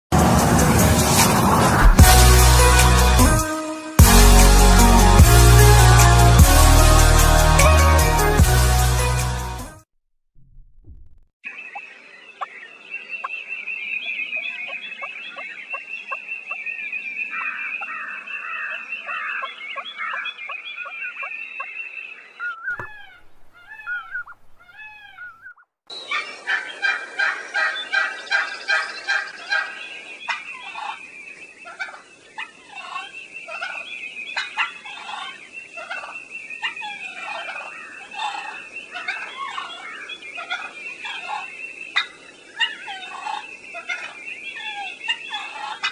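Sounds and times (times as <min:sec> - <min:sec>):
chorus of bird calls: 0:11.4 - 0:45.9
rising and falling calls: 0:22.4 - 0:31.0.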